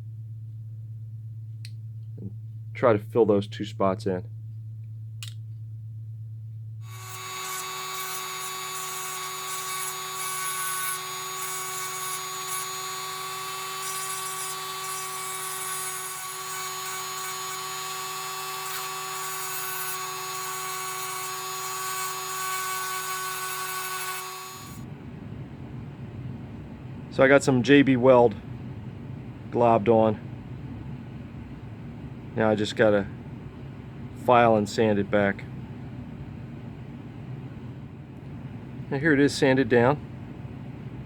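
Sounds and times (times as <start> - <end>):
small power tool whining: 6.8 - 24.8.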